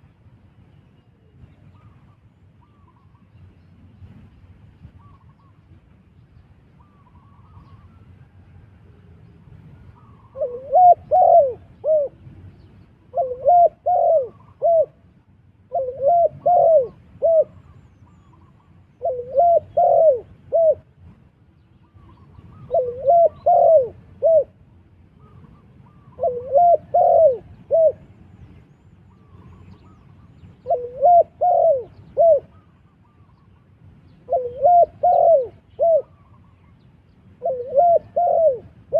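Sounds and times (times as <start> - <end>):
dove cooing: 9.9 - 12.2, 13.0 - 20.9, 22.2 - 24.6, 25.2 - 28.1, 30.6 - 33.4, 34.2 - 36.5, 37.3 - 38.9.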